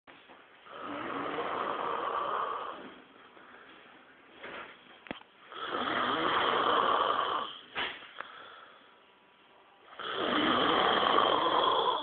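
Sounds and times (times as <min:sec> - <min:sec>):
person snoring: 0:00.7 - 0:03.0, 0:05.5 - 0:07.6, 0:09.9 - 0:12.0
soft breath: 0:02.2 - 0:04.3, 0:07.5 - 0:09.1.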